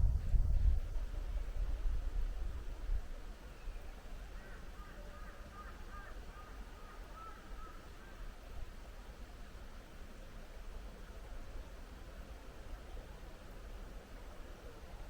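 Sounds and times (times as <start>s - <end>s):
wind rumbling on microphone: 0.0s - 3.4s
soft outdoor hiss: 0.0s - 15.0s.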